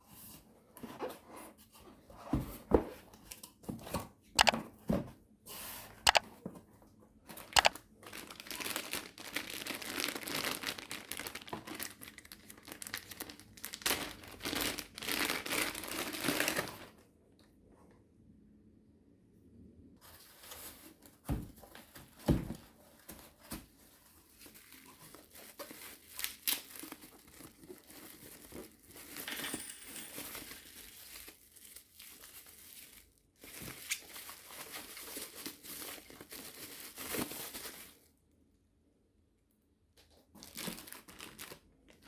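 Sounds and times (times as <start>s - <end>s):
packaging crinkling and tearing: 7.3s - 17.0s, 23.0s - 38.1s, 40.4s - 42.0s.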